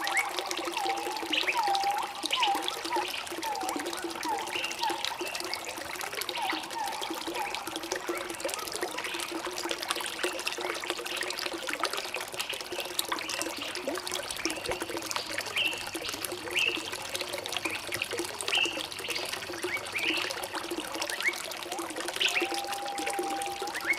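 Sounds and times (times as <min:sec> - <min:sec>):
stream trickling and babbling: 0:00.0 - 0:23.9
bird chirps and whistles: 0:22.2 - 0:23.9.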